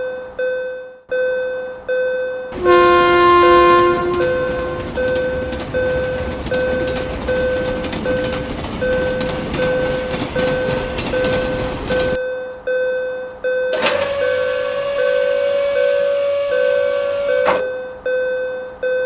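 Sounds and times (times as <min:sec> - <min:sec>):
railroad crossing bell ringing: 0:00.0 - 0:19.0
passing train rushing: 0:02.5 - 0:12.2, 0:13.7 - 0:17.7.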